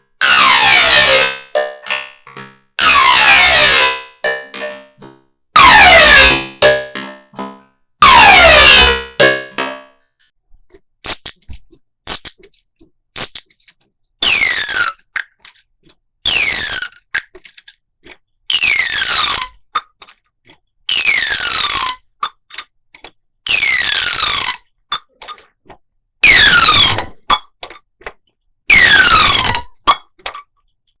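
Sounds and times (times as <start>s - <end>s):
small clicks: 10.7s - 20.2s.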